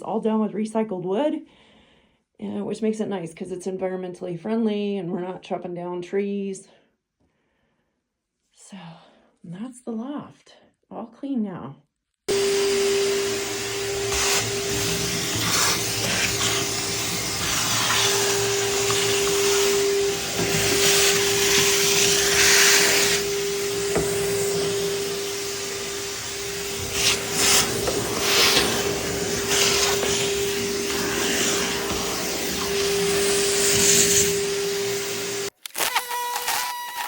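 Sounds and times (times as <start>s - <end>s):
vacuum cleaner running: 12.3s - 37.0s.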